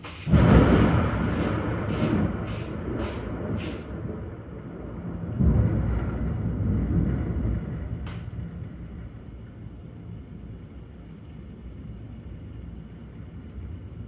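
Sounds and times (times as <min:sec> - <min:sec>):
thunder rumbling: 0:00.0 - 0:09.6.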